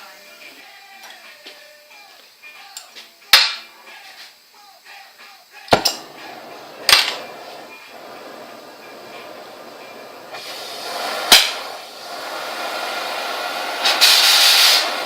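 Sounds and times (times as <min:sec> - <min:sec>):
hammer striking metal: 0:05.7 - 0:06.3.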